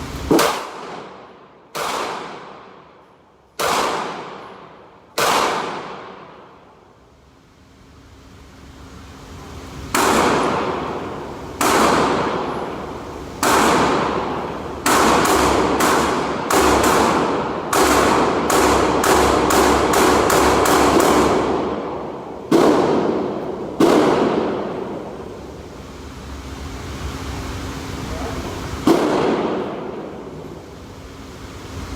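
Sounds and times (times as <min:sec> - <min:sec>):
echoing gunshots: 0:00.3 - 0:06.8, 0:09.9 - 0:25.6, 0:28.8 - 0:30.5.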